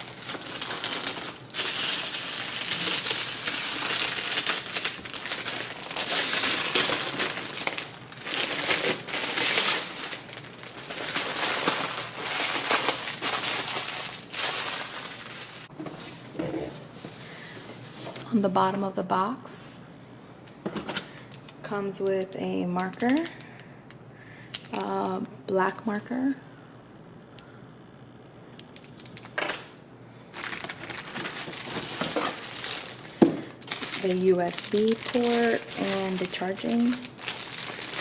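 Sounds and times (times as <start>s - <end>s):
plastic packaging crinkling: 0.0s - 15.7s, 22.8s - 23.6s, 28.7s - 38.0s.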